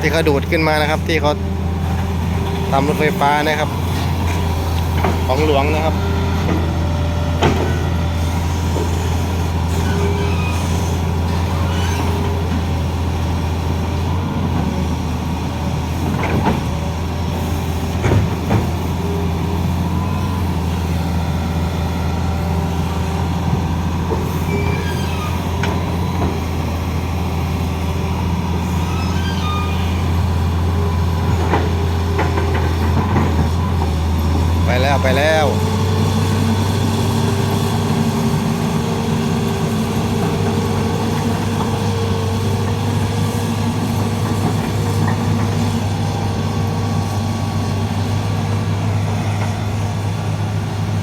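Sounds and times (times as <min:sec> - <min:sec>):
diesel engine running: 0:00.0 - 0:51.0
sharp engine knocks: 0:07.4 - 0:07.8.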